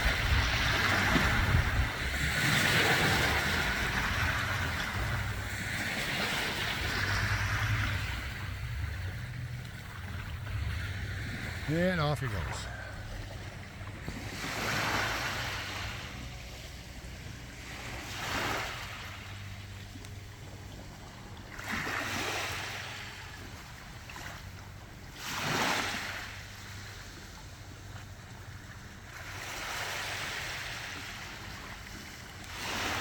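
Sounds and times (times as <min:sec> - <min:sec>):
steady low rumble: 0:00.0 - 0:21.8
small waves breaking on sand: 0:00.0 - 0:33.0.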